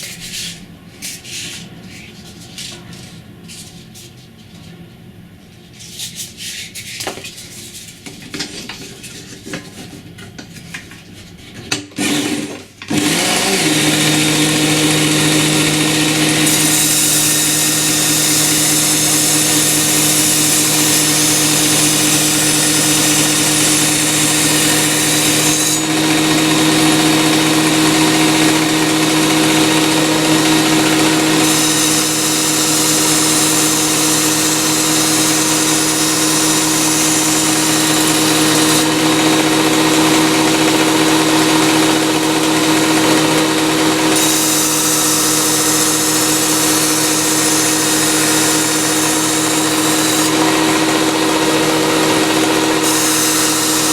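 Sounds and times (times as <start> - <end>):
blade grinding on belt: 12.0 - 53.9
sharpener motor humming: 12.0 - 53.9.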